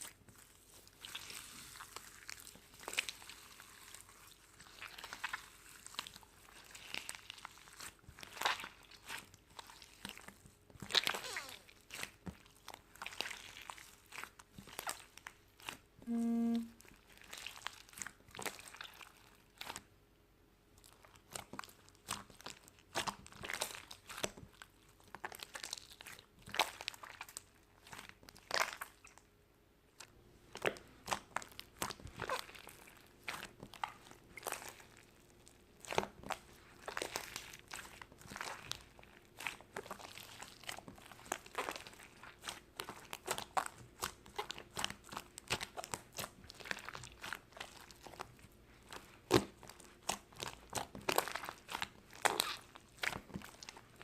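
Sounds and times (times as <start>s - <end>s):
short pitched tone: 16.0s - 16.8s.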